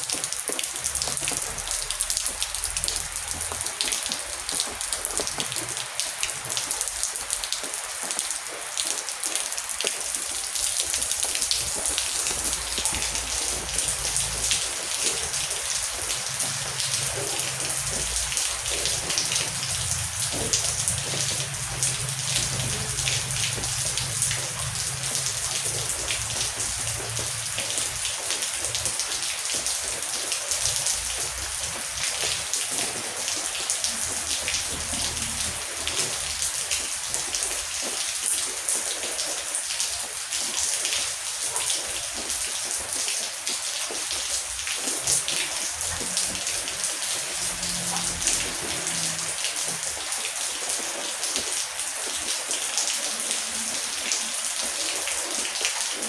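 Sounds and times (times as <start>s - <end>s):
heavy rain falling: 0.0s - 56.0s
distant thunder rumble: 11.6s - 28.0s.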